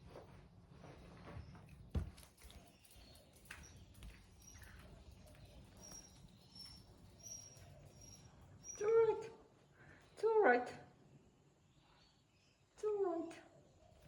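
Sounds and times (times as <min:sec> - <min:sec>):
small birds chirping: 0:01.2 - 0:10.4.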